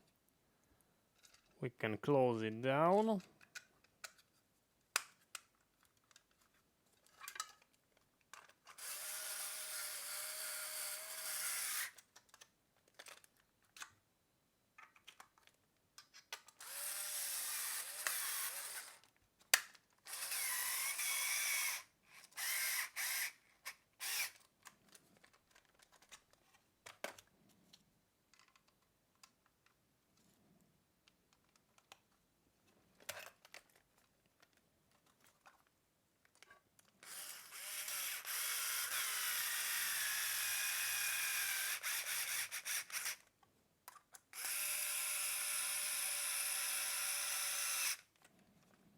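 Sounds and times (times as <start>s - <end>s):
electric screwdriver whining: 8.8s - 12.0s, 16.6s - 19.0s, 20.1s - 24.4s, 37.0s - 43.2s, 44.4s - 48.0s
parts clicking and knocking: 24.0s - 27.3s.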